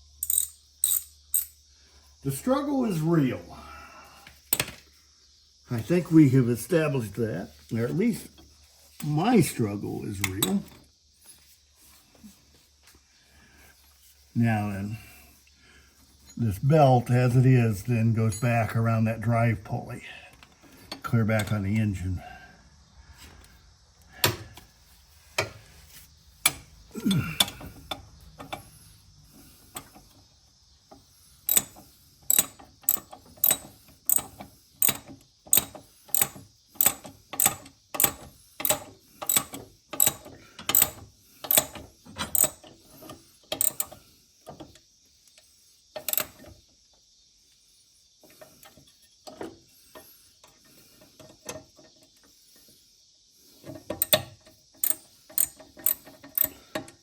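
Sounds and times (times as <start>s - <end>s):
ratchet wrench clicking: 0.2s - 1.6s, 31.4s - 44.0s, 54.8s - 56.6s.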